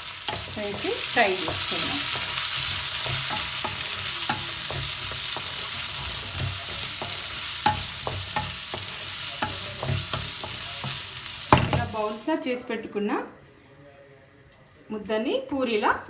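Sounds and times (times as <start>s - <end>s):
utensil scraping pan: 0.0s - 12.2s
vegetables sizzling in oil: 0.0s - 13.2s.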